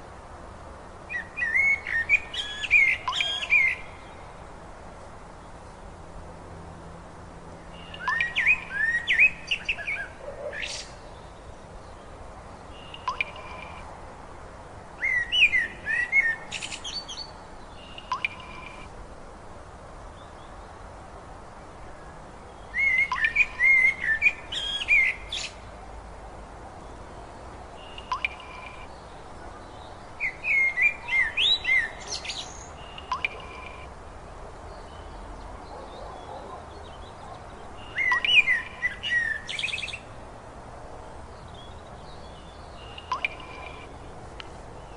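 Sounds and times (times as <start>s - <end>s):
faint steady hiss: 0.0s - 44.9s
songbird whistling: 1.1s - 3.9s, 7.8s - 10.8s, 15.0s - 17.3s, 17.9s - 18.8s, 22.7s - 25.6s, 30.2s - 33.8s, 37.9s - 40.0s.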